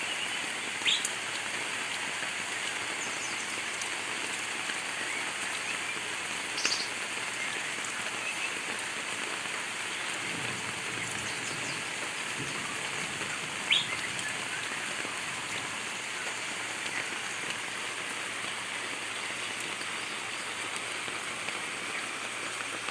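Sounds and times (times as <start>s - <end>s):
heavy rain falling: 0.0s - 22.9s
high bird chirps: 6.6s - 6.9s, 13.7s - 14.9s.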